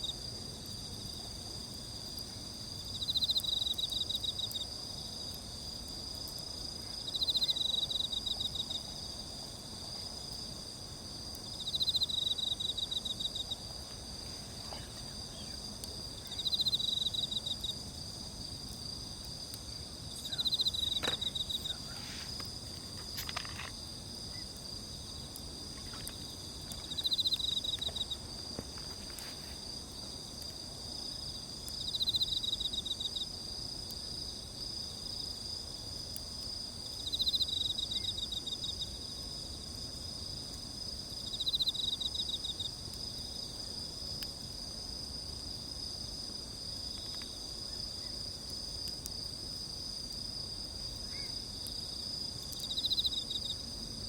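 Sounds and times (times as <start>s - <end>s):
insects chirping: 0.0s - 54.0s
pulsed insect trill: 19.8s - 25.2s.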